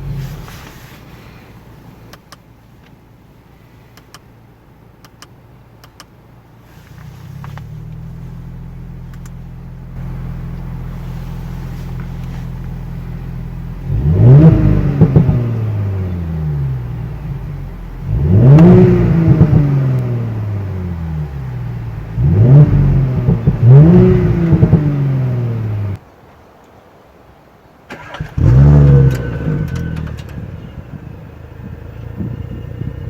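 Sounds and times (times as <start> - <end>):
car engine idling and revving: 0.0 - 26.0, 27.9 - 33.0
light clicks: 3.9 - 4.3, 5.0 - 6.2.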